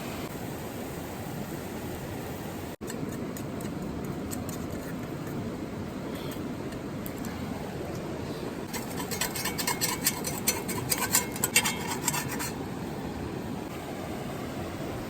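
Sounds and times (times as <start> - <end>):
river water rushing: 4.8 - 15.0
quick scraping and clicking: 8.7 - 12.6.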